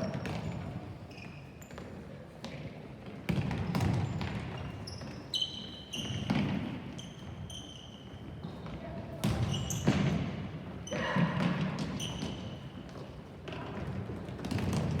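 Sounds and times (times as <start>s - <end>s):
shoes squeaking on floor: 0.0s - 2.0s, 3.8s - 8.5s, 11.8s - 12.8s.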